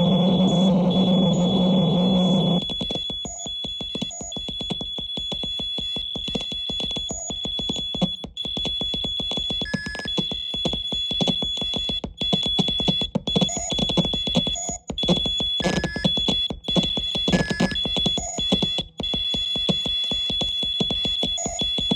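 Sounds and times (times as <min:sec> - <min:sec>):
low electronic drone: 0:00.0 - 0:02.6
high alarm-like whistling tone: 0:00.0 - 0:21.9
rapid crackling clicks: 0:00.0 - 0:21.9.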